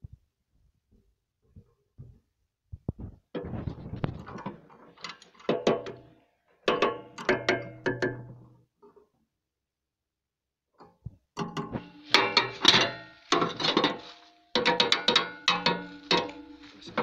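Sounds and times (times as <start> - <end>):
metal clanking and clicking: 11.4 - 17.0
metal rattling: 11.6 - 17.0.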